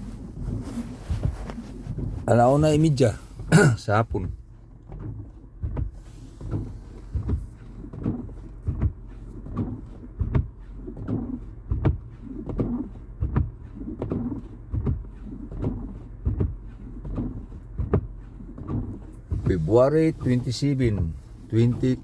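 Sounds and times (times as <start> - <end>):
low thumps: 15.7 - 19.8.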